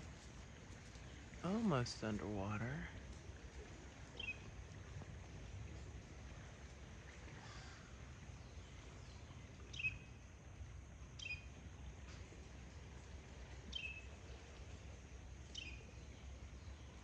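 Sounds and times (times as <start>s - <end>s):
bird chirping: 4.2s - 4.4s, 8.5s - 10.2s, 11.2s - 11.5s, 13.7s - 14.1s, 15.5s - 16.9s.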